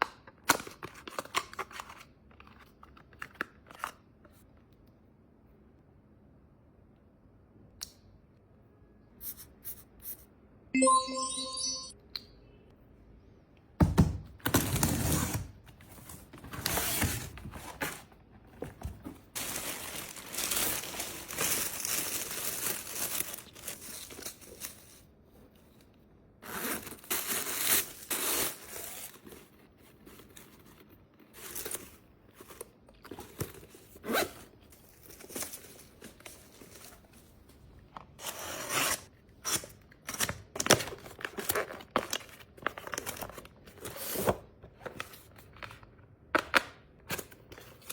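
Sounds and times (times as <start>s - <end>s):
packaging tearing and crinkling: 19.4s - 24.6s.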